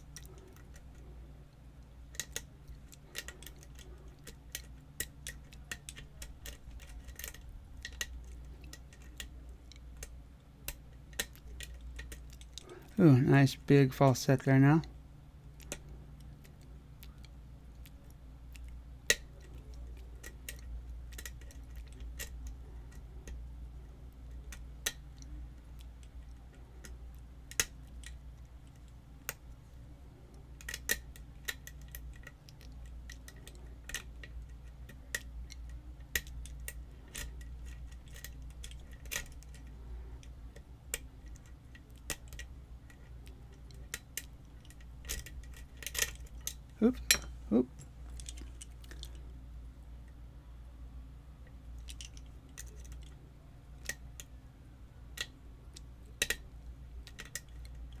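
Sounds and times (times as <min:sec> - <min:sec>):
steady low hum: 0:00.0 - 0:58.0
lock pick metal clicks and scrapes: 0:02.1 - 0:12.7, 0:17.9 - 0:23.4, 0:30.5 - 0:47.3, 0:55.1 - 0:58.0.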